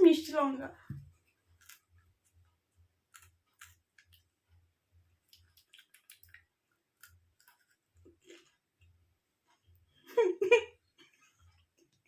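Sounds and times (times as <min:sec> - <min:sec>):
person chewing crunchily: 0:01.5 - 0:02.4, 0:03.0 - 0:04.3, 0:05.2 - 0:09.0.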